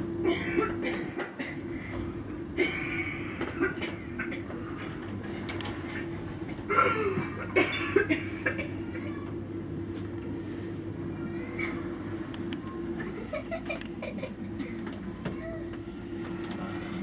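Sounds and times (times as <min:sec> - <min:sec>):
steady low hum: 0:00.0 - 0:17.0
person coughing: 0:06.7 - 0:08.8
people chuckling: 0:12.8 - 0:15.0.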